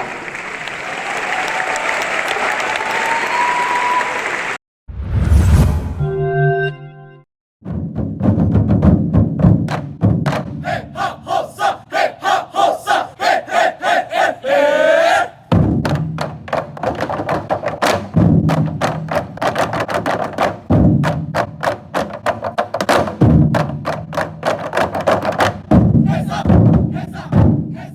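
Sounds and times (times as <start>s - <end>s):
drum ensemble playing: 7.6s - 11.5s, 15.5s - 27.9s
people shouting: 10.6s - 15.5s, 26.1s - 27.9s
heavy drum boom: 15.5s - 16.2s.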